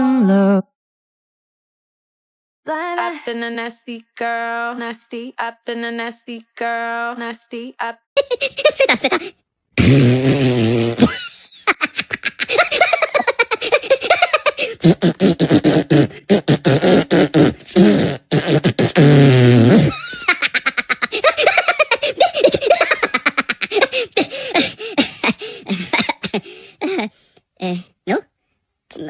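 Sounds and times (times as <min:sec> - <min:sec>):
beatboxing vocal sounds: 0:09.8 - 0:11.1, 0:14.8 - 0:20.0.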